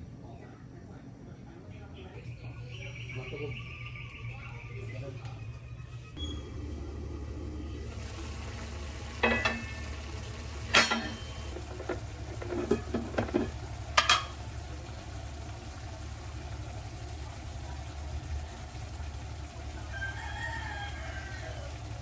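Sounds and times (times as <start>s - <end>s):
steady low hum: 0.0s - 19.9s
metal utensil clinking on cookware: 9.2s - 9.8s, 10.7s - 14.4s.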